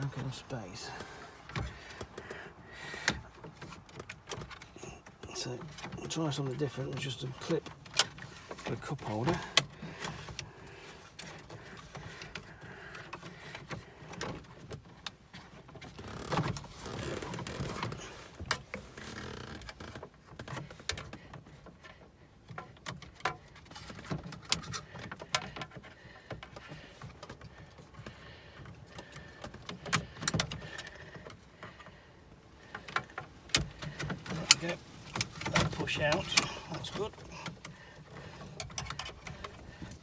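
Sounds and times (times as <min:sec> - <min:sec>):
plastic scraping: 0:32.6 - 0:40.0.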